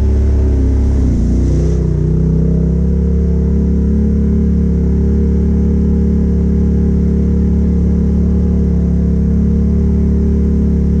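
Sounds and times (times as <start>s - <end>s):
atv engine droning: 0.0s - 11.0s.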